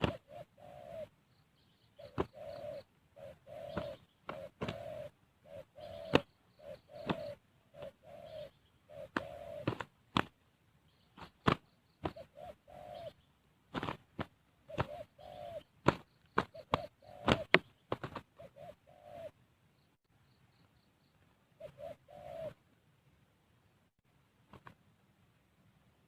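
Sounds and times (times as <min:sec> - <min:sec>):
wings flapping: 0:00.0 - 0:00.4, 0:03.5 - 0:05.1, 0:05.9 - 0:06.3, 0:06.9 - 0:08.0, 0:09.0 - 0:10.4, 0:11.2 - 0:12.5, 0:13.7 - 0:18.5
dove cooing: 0:00.0 - 0:10.4, 0:11.2 - 0:19.4, 0:21.6 - 0:22.7.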